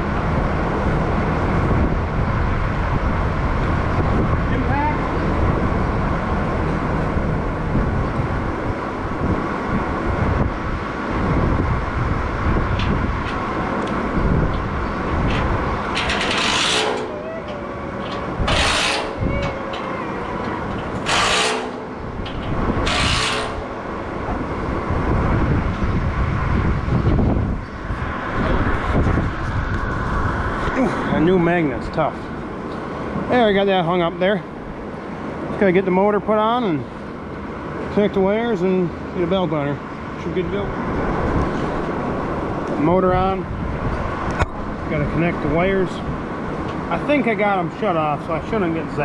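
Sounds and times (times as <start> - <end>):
low machine drone: 0.0 - 34.8.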